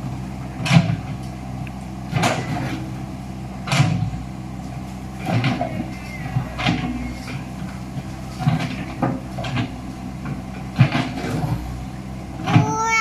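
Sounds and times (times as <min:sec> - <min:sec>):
excavator diesel engine running: 0:00.0 - 0:13.0
bucket clanking on road: 0:02.1 - 0:02.9, 0:03.6 - 0:12.8.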